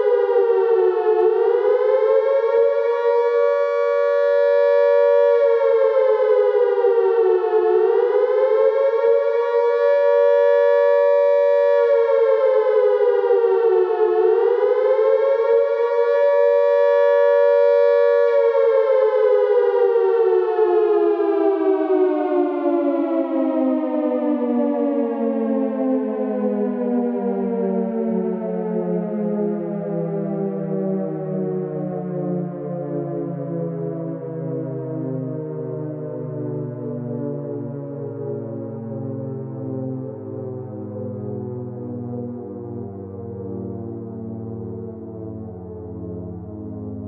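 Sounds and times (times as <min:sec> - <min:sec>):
air raid siren wailing: 0:00.0 - 0:47.0.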